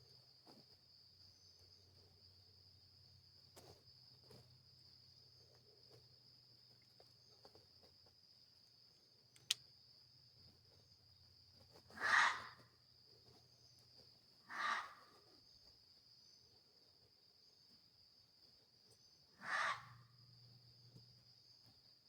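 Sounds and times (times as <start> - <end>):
crickets trilling: 0.0 - 22.0
sharp click: 9.4 - 9.6.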